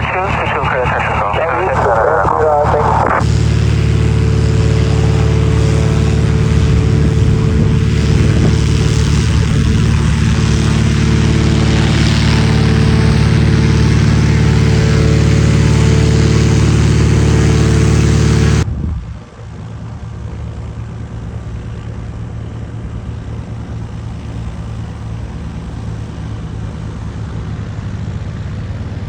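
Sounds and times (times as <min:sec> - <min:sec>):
propeller aircraft engine drone: 0:00.0 - 0:29.0.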